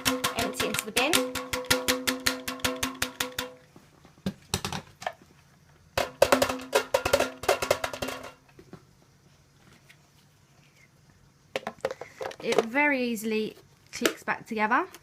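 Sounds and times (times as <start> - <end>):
plastic container knocking on bin: 6.0 - 8.4.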